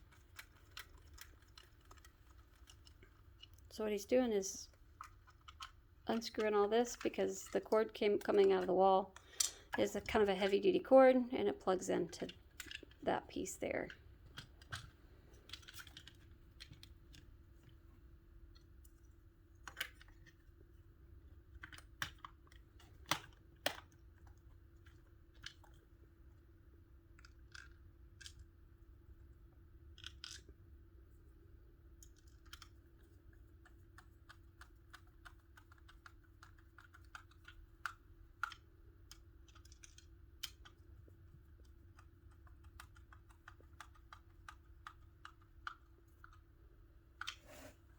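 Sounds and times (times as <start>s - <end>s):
screwdriver and plastic parts clicking: 0.0s - 3.7s, 12.1s - 13.0s, 33.6s - 40.9s, 41.6s - 46.5s.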